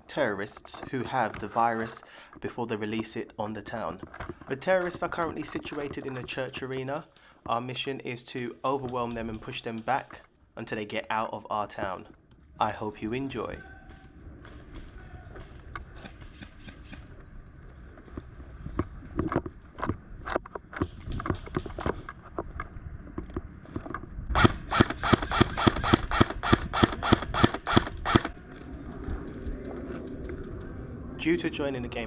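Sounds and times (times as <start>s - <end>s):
sharp clicks: 23.2s - 28.4s.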